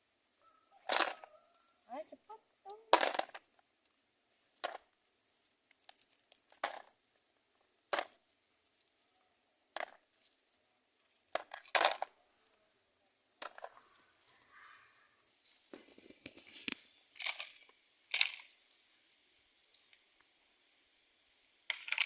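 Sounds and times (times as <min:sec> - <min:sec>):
stones clattering into toy truck: 0:00.8 - 0:01.2, 0:02.9 - 0:03.6, 0:04.5 - 0:05.0, 0:05.7 - 0:07.0, 0:07.9 - 0:08.4, 0:09.8 - 0:10.2, 0:11.3 - 0:12.2, 0:13.4 - 0:13.8, 0:16.0 - 0:18.6, 0:21.7 - 0:22.0.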